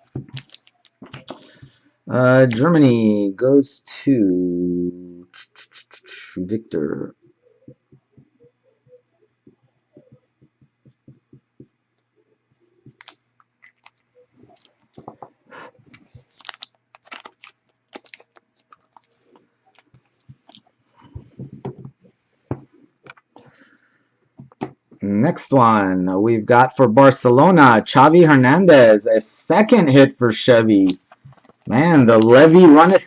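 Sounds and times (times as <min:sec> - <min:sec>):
cards and plastic holders handled: 0:00.0 - 0:01.8, 0:12.8 - 0:23.4, 0:30.8 - 0:33.0.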